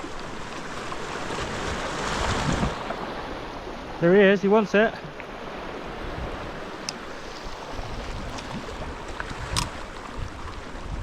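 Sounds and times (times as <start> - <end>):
surf washing on rocks: 0.0 - 11.0
faint clicks: 9.2 - 9.8.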